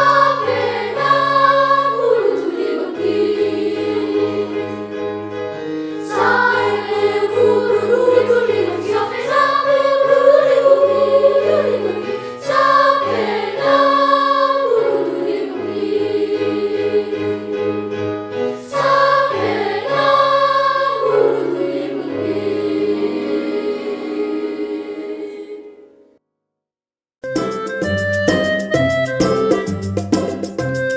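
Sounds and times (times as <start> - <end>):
children's choir singing: 0.0 - 26.2.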